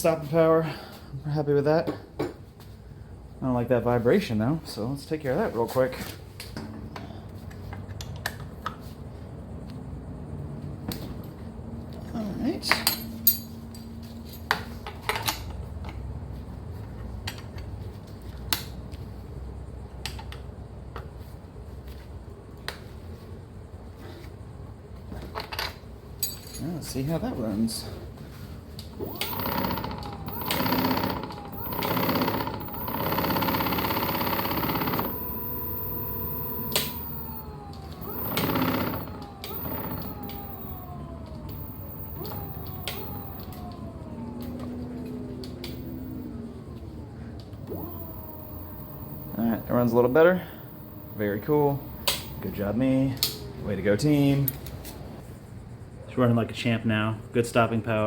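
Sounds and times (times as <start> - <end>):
electric scooter motor whining: 27.6 - 55.3
low steady hum: 29.0 - 55.7.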